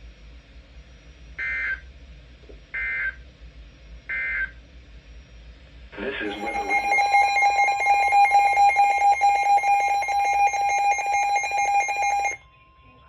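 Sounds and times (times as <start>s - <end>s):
electronic alarm tone with buzz: 6.2s - 12.4s.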